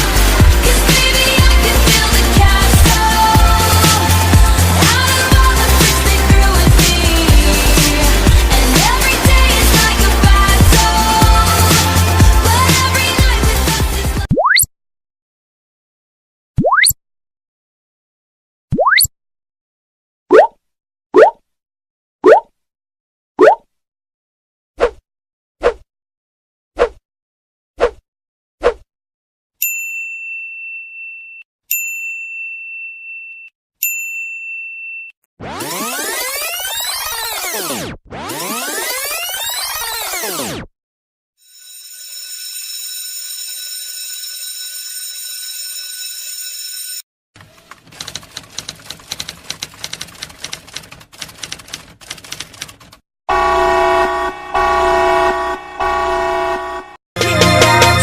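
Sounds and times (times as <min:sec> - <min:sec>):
electronic music: 0:00.0 - 0:14.2, 0:35.4 - 0:40.6
typewriter keys clacking: 0:47.4 - 0:53.0
loud horn blasts: 0:53.3 - 0:57.0.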